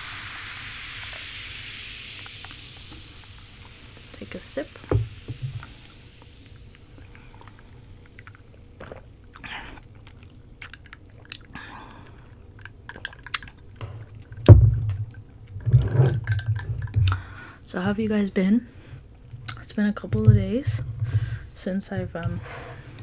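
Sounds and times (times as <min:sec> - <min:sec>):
person sipping a drink: 0:00.1 - 0:14.4
heavy low thumps: 0:14.5 - 0:15.1.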